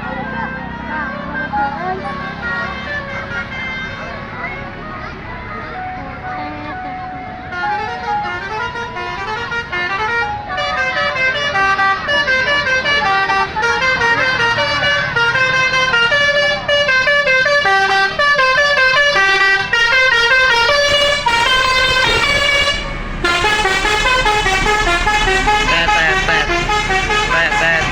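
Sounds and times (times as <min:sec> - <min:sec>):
musical bus horn playing tune: 0:00.1 - 0:04.4, 0:05.8 - 0:27.9.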